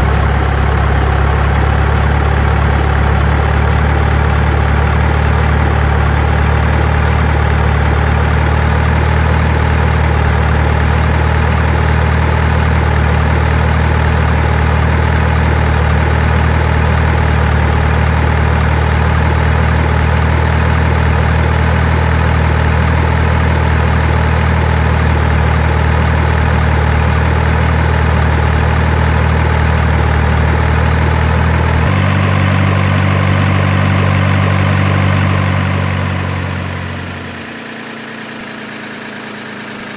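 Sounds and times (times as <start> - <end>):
heavy engine idling: 0.0 - 39.9.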